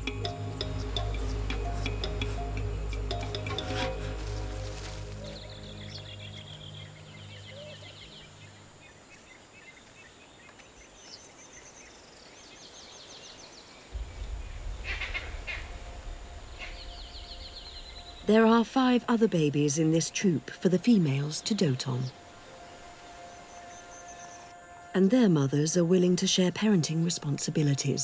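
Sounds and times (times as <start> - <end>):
low steady hum: 0.0 - 9.3
birds trilling and chirping: 0.0 - 19.9.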